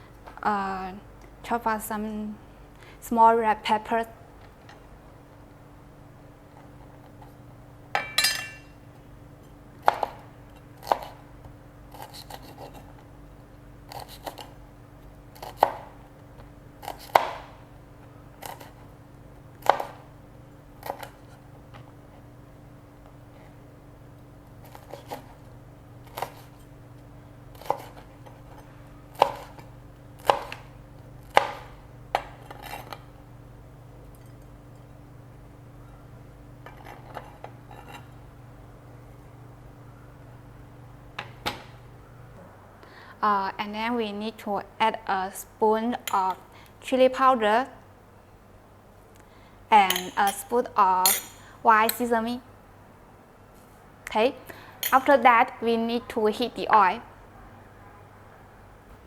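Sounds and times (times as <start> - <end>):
knife chopping on plastic board: 9.8 - 10.2, 10.8 - 11.2, 16.8 - 17.5, 19.6 - 20.0, 29.1 - 32.7.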